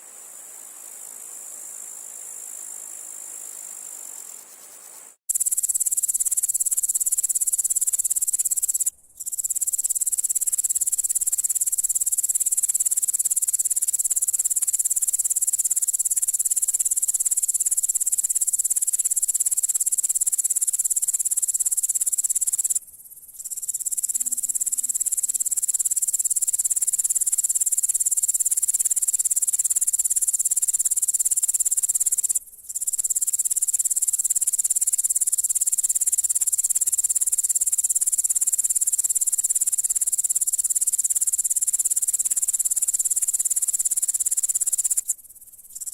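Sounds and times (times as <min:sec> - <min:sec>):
grasshopper chirping: 0:00.0 - 0:45.9.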